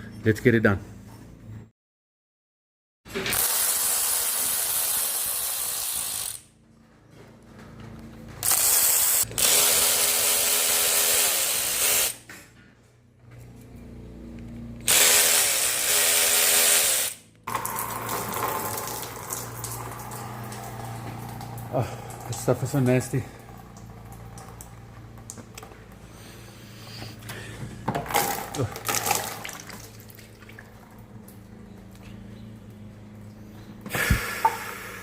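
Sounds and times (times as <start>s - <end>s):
power ratchet whirring: 3.1s - 6.5s, 8.4s - 12.3s, 14.8s - 18.6s.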